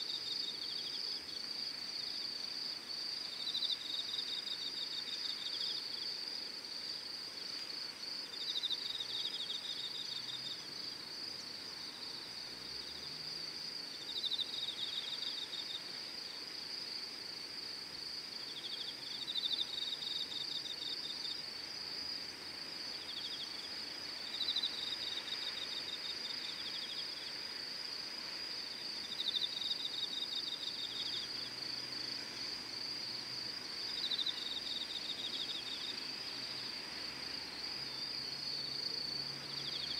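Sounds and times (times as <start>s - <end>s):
insect pulsed trills: 37.5s - 39.9s.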